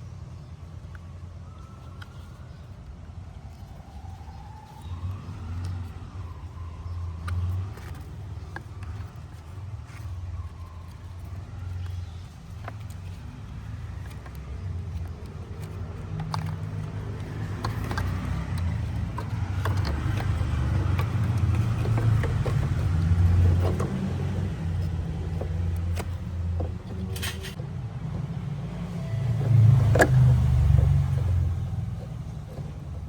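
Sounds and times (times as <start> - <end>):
light clicks and knocks: 0.8 - 33.0
refrigerator fan motor humming: 13.2 - 33.0.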